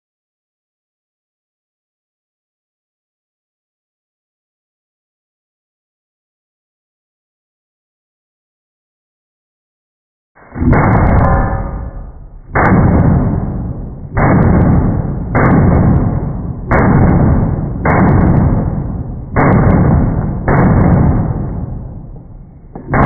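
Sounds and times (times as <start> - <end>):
slowed gunshot booms: 10.4 - 23.0.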